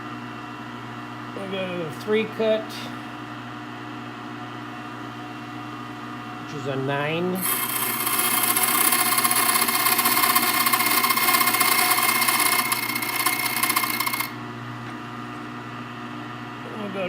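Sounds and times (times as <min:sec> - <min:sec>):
low machine hum: 0:00.0 - 0:17.0
key cutter grinding metal: 0:07.4 - 0:14.4.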